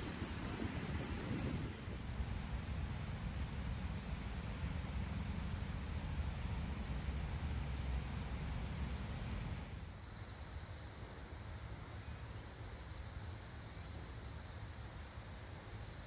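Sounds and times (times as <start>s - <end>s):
wind rumble on microphone: 0.0s - 9.7s
steady hiss: 0.0s - 16.0s.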